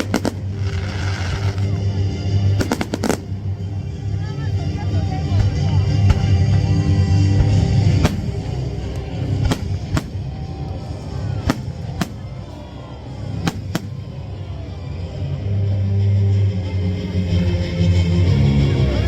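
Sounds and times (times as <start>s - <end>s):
fireworks bangs: 0.0s - 1.8s, 2.5s - 3.4s, 5.4s - 14.2s
music: 0.0s - 19.0s.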